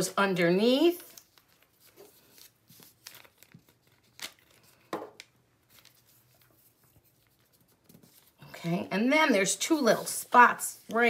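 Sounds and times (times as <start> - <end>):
paper rustling: 0.9 - 8.5.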